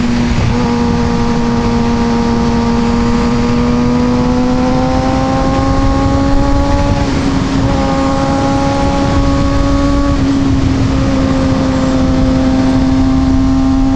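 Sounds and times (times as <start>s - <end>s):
motorcycle engine at high revs: 0.0s - 13.9s
wind rush: 0.0s - 13.9s.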